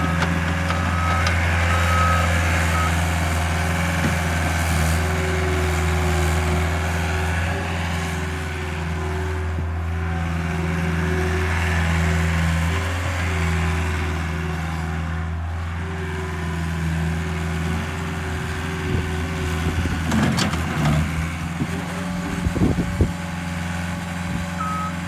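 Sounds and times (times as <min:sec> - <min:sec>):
diesel engine running: 0:00.0 - 0:25.0
reverse alarm beeping: 0:24.6 - 0:25.0.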